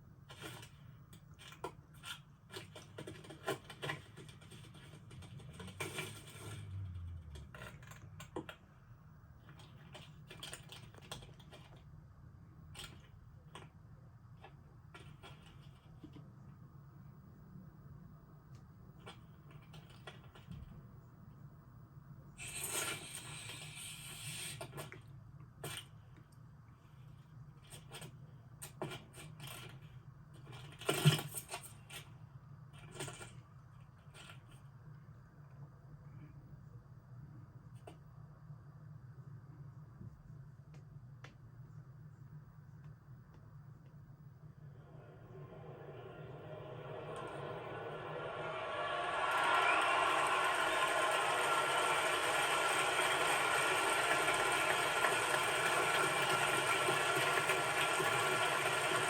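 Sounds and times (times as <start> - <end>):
low steady hum: 31.8 - 58.0.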